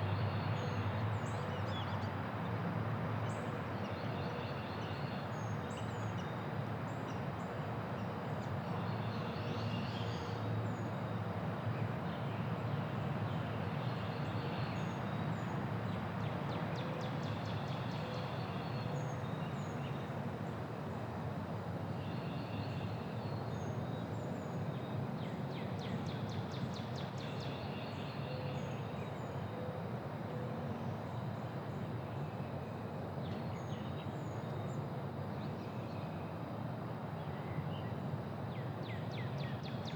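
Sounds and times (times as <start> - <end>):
hum of distant traffic: 0.0 - 39.9.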